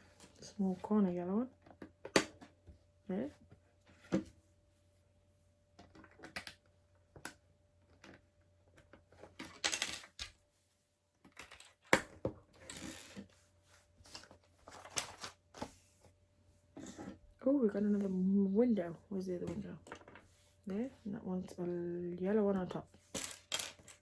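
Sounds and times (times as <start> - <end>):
plastic bricks clicking and clattering: 11.2 - 13.2, 23.1 - 24.0.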